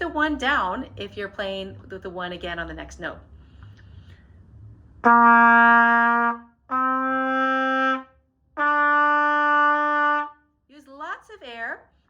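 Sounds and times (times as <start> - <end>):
trumpet playing held notes: 5.0 - 10.4.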